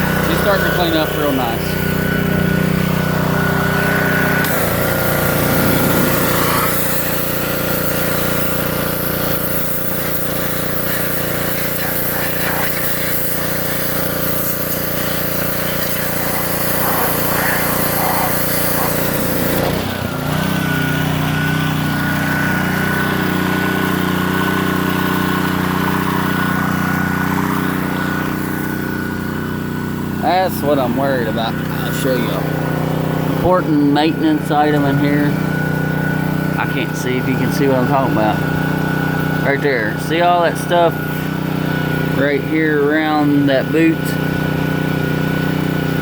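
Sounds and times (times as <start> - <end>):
high-pressure spray hissing: 0.0 - 20.0, 21.6 - 29.2
pressure washer engine running: 0.0 - 46.0.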